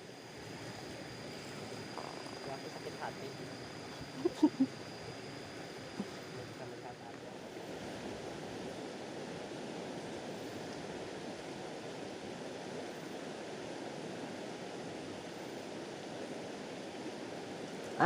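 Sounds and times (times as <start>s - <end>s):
river water rushing: 5.0s - 18.0s.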